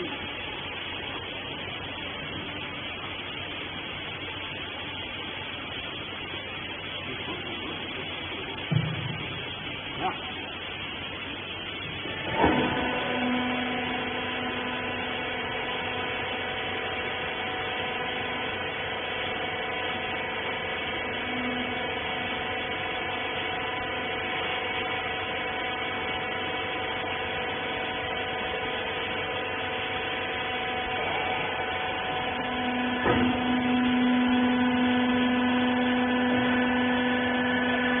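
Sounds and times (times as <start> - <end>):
electric motor humming: 12.2 - 38.0.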